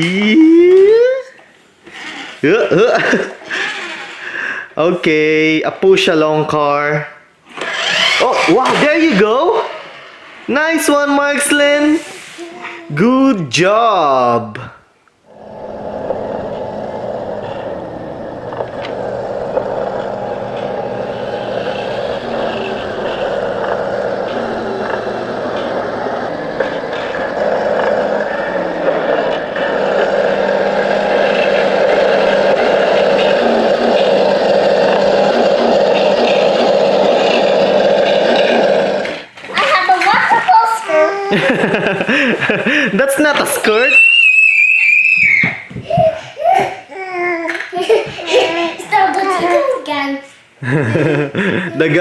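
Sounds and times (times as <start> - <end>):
small motor whirring: 3.4 - 4.2, 7.5 - 8.9, 15.3 - 39.3.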